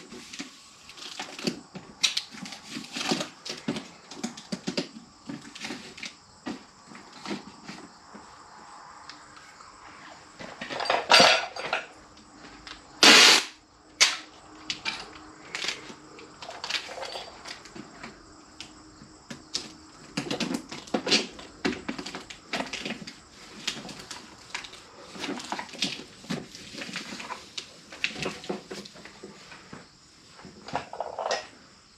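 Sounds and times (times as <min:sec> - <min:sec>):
loud noisy bursts: 0:13.0 - 0:13.6.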